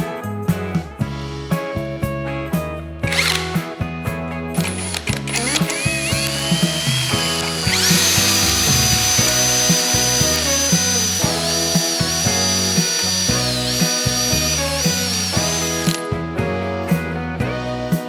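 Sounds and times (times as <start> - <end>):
power tool motor whining: 3.1 - 3.6, 4.6 - 16.1.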